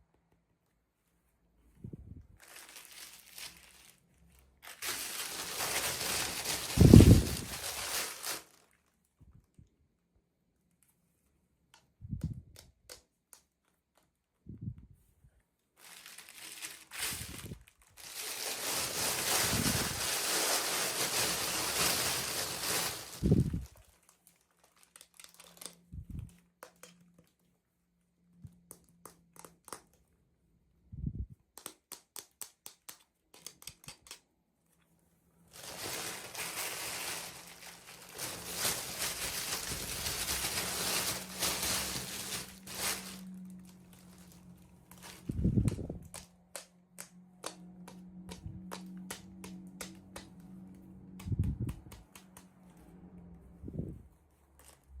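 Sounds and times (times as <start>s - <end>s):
plastic packaging crinkling: 2.4s - 8.9s, 15.8s - 27.4s, 35.5s - 45.3s.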